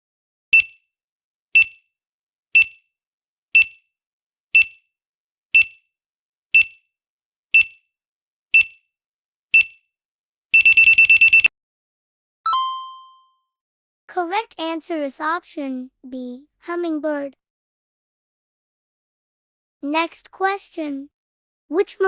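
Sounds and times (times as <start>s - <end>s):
countdown timer beeping: 12.5s - 13.2s.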